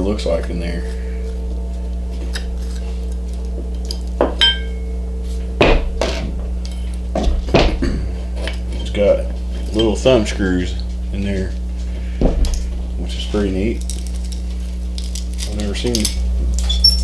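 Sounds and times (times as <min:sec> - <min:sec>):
low hum: 0:00.0 - 0:17.0
metal clinks and knocks: 0:00.0 - 0:17.0.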